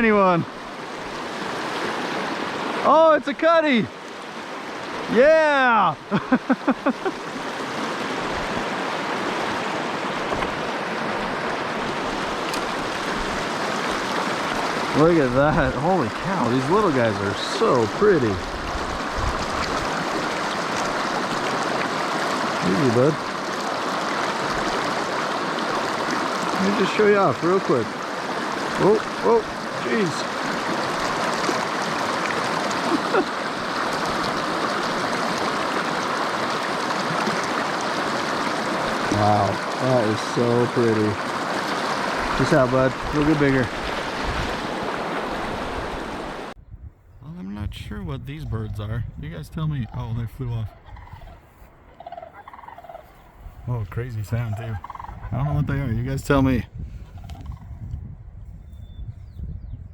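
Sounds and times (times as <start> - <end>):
stream water rushing: 0.0 - 46.6.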